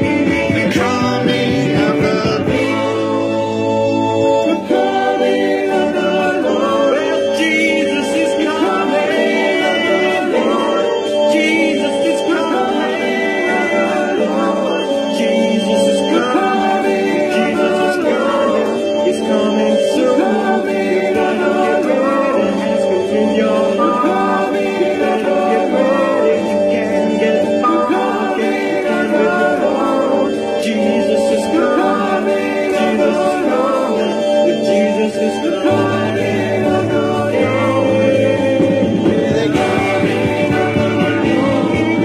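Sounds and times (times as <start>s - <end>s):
rock band playing: 0.0s - 5.1s, 36.0s - 42.0s
group voices singing: 0.0s - 42.0s.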